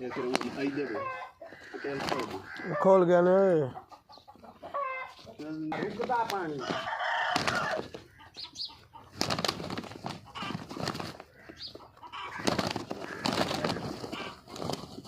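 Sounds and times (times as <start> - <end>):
roosters flapping wings: 0.2 - 0.8, 2.0 - 2.4, 5.8 - 8.1, 9.1 - 15.0.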